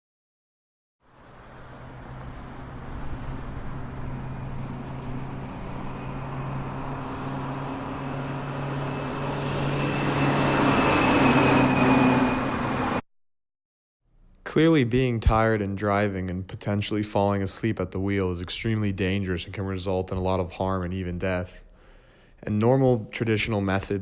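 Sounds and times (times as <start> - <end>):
road noise: 1.0 - 13.0
vehicle engine hum: 1.0 - 13.0.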